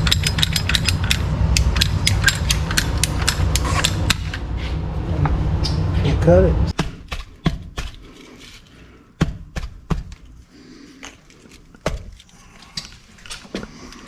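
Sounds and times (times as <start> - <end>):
tools and pipe parts clicking: 0.0 - 4.4, 11.0 - 14.0.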